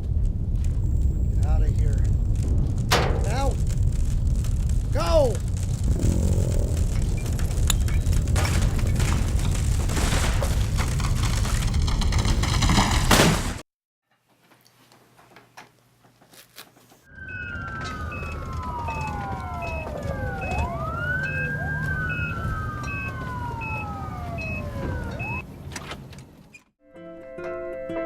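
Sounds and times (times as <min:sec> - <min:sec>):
low traffic rumble: 0:00.0 - 0:13.2, 0:17.1 - 0:26.5
loud noisy blast: 0:01.1 - 0:11.4, 0:17.1 - 0:25.4
emergency vehicle sirens wailing: 0:17.1 - 0:25.4.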